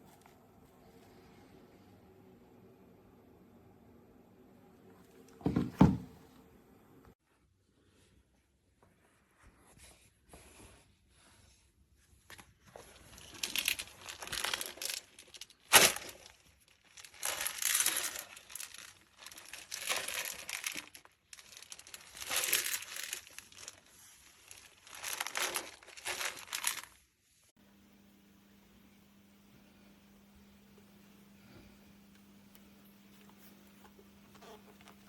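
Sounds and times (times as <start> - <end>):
plastic packaging crinkling: 12.7 - 27.1.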